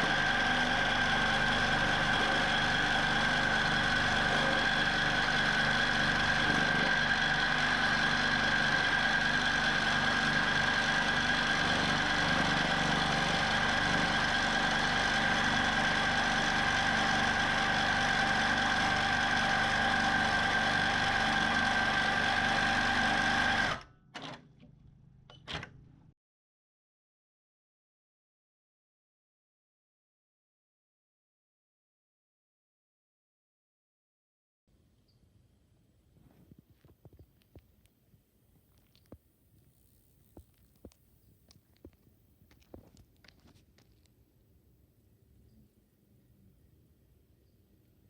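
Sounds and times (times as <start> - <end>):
quilting machine whining: 0.0 - 24.4.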